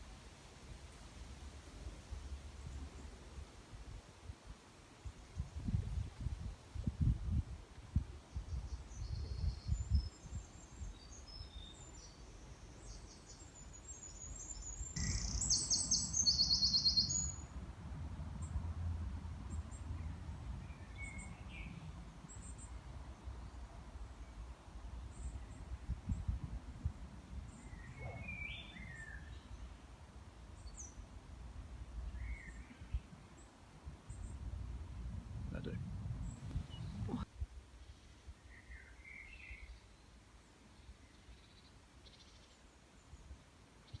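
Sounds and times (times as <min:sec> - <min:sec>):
birds chirping: 0:10.6 - 0:17.4, 0:27.5 - 0:29.6, 0:35.6 - 0:37.3
steady low rumble: 0:34.4 - 0:37.3.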